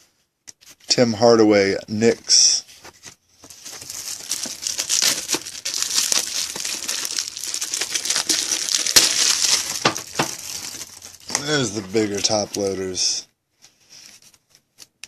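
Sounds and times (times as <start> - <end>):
plastic packaging crinkling: 3.4 - 13.0.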